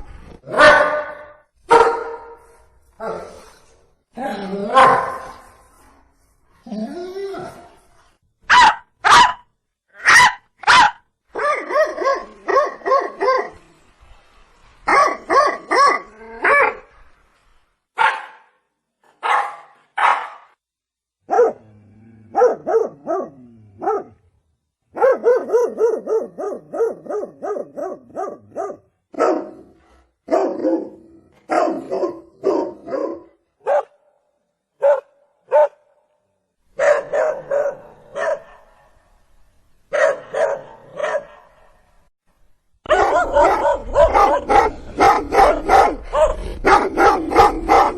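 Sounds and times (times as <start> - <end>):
dog barking: 0.5 - 2.4, 4.7 - 5.4, 8.5 - 13.6, 14.9 - 16.8, 18.0 - 18.6, 19.2 - 20.5, 21.3 - 21.7, 22.3 - 24.2, 24.9 - 34.0, 34.8 - 35.9, 36.8 - 39.0, 39.9 - 41.8, 42.8 - 47.9.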